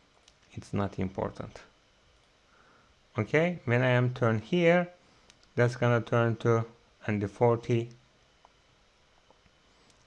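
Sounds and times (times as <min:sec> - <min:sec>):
faint click: 0:05.3 - 0:05.6.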